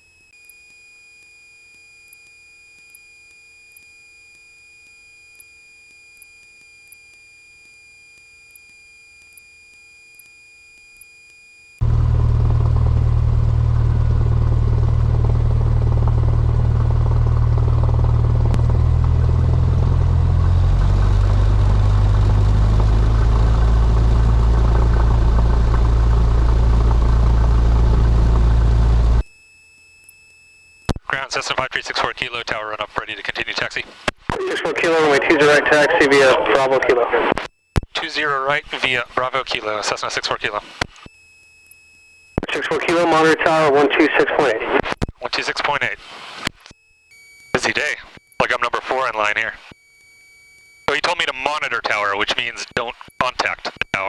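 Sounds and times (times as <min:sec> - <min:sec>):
faint electronic tones: 0:00.0 - 0:11.8, 0:34.3 - 0:37.4, 0:41.6 - 0:46.0, 0:46.6 - 0:54.0
piston aircraft engine running: 0:11.8 - 0:29.2.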